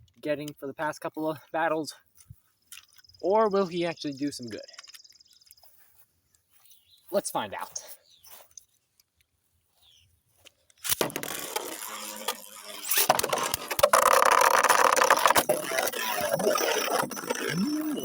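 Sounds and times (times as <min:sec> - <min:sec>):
sharp collision clicks: 0:10.8 - 0:18.0
spinning tops clashing and scraping: 0:10.8 - 0:18.0
spinning tops launched: 0:10.8 - 0:18.0.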